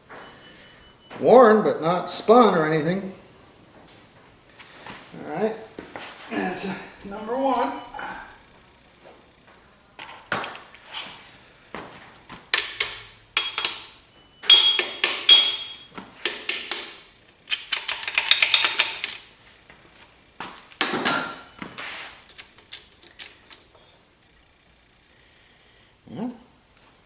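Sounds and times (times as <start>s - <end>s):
metal tools and parts knocking: 12.5s - 19.3s.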